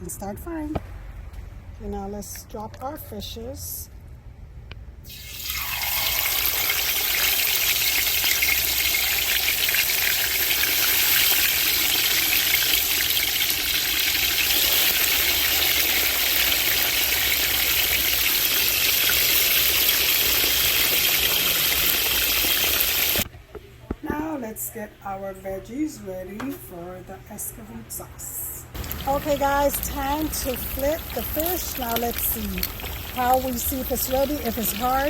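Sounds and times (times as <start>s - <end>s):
fish sizzling in hot oil: 5.1s - 23.2s, 28.8s - 35.0s.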